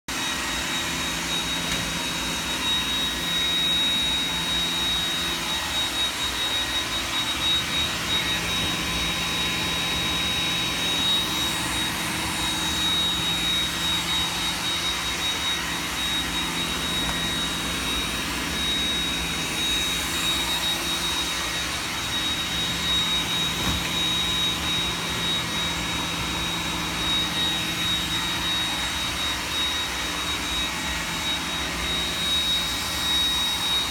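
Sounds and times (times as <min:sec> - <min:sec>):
robot vacuum whirring: 0:00.1 - 0:33.9.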